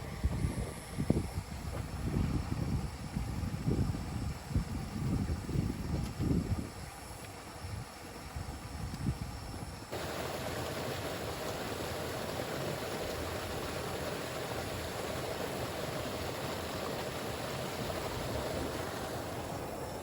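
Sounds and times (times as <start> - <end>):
river water rushing: 9.9 - 20.0.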